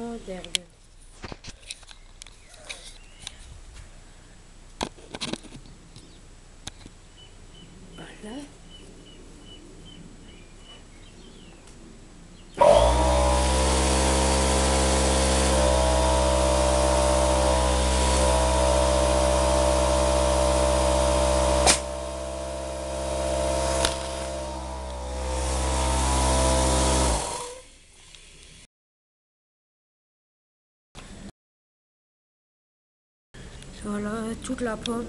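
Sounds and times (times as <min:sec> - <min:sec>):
motor-driven machine humming: 0:12.6 - 0:27.8
airgun shots: 0:21.6 - 0:22.0.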